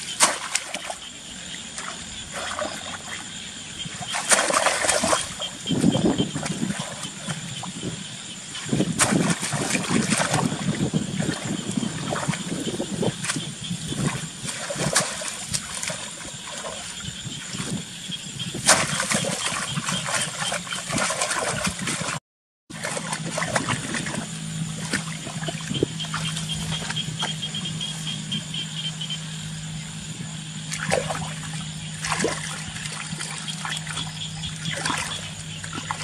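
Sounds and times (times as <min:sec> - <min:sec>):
low hum: 0:00.0 - 0:36.0
water splashing and sloshing: 0:00.0 - 0:36.0
faint high whine: 0:22.8 - 0:36.0.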